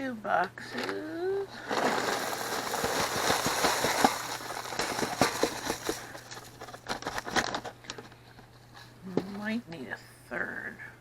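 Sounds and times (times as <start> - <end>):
stuffing mix pouring: 1.5 - 7.6
crumbs pattering and rustling: 1.6 - 7.6.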